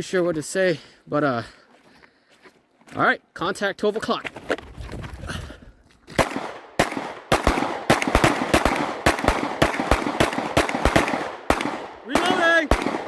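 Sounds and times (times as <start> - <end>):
gunshots: 6.2 - 13.0.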